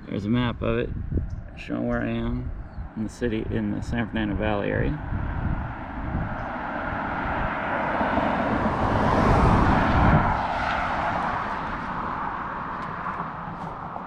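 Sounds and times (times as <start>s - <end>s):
vehicle passing by: 4.1s - 14.0s.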